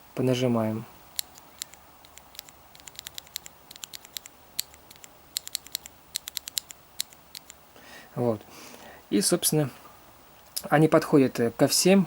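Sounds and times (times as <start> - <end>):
keyboard key plastic clicks: 1.2 - 7.6.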